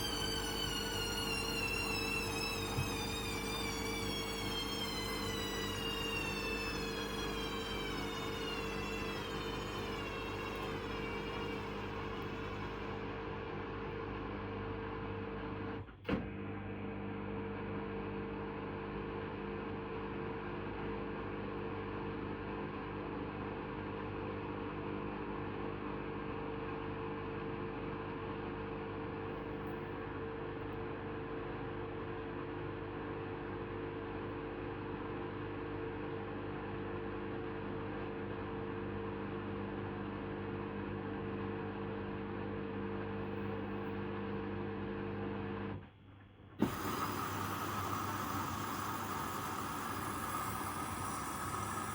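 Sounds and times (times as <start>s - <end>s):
washing machine humming: 0.0s - 15.3s, 46.6s - 51.9s.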